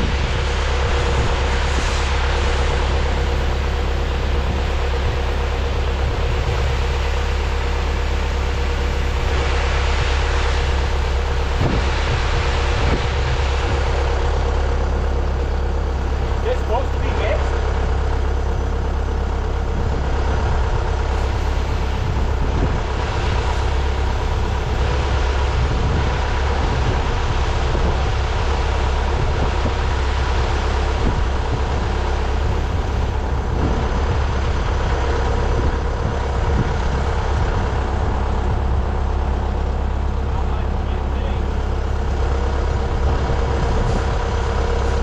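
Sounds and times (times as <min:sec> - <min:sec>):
tractor engine running: 0:00.0 - 0:45.0.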